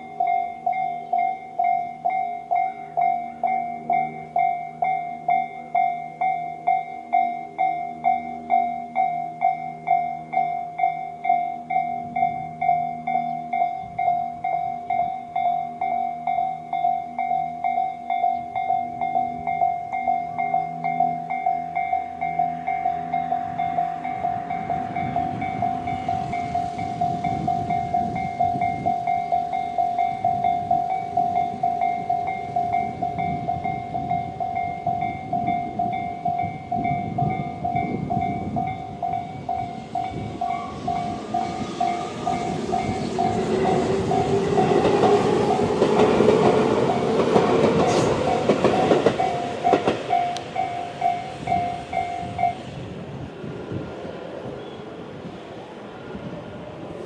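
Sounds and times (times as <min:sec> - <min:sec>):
level crossing bell dinging: 0:00.0 - 0:43.4
train passing with rumble: 0:00.0 - 0:57.0
train wheel clatter: 0:23.6 - 0:52.7.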